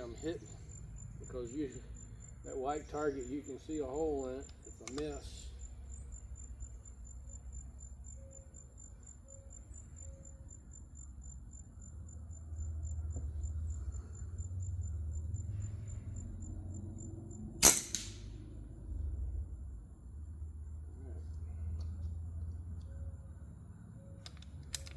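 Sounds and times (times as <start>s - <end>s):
insect chirping: 0.0s - 24.9s
low wind rumble: 14.2s - 21.2s
gunshot: 17.6s - 18.4s.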